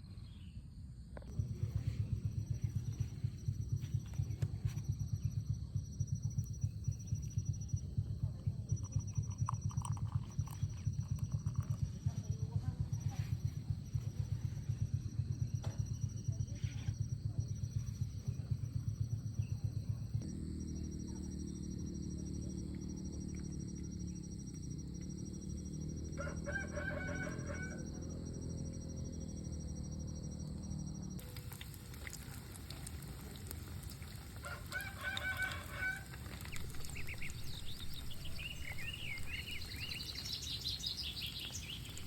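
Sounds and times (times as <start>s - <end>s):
rooster crowing: 26.1s - 28.5s, 34.4s - 42.0s
small birds chirping: 31.2s - 42.0s.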